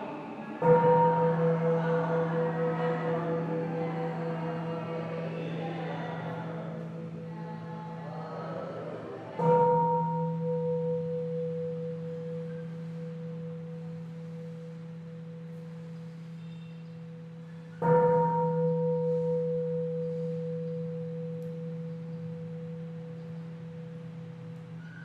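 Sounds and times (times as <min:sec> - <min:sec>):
large bell ringing: 0:00.0 - 0:25.0.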